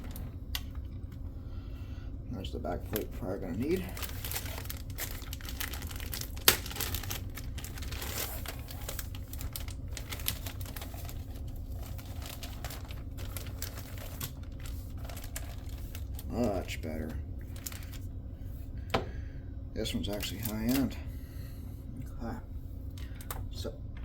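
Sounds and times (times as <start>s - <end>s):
steady low hum: 0.0s - 24.0s
packaging crinkling: 2.9s - 18.1s.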